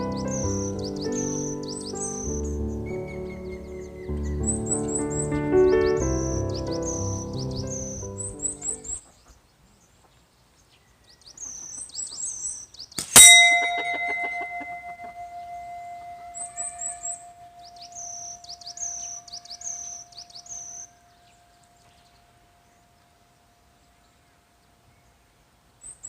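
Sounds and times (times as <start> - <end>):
small birds chirping: 0.0 - 26.0
slingshot shot clanging a bell: 13.0 - 16.2
bell ringing: 13.2 - 16.4.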